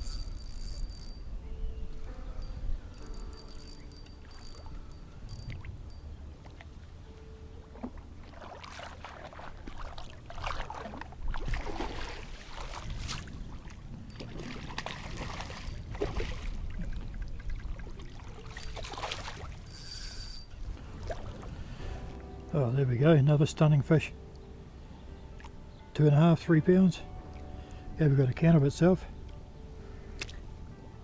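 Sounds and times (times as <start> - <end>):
water splashing and sloshing: 5.4 - 22.6, 30.1 - 30.5.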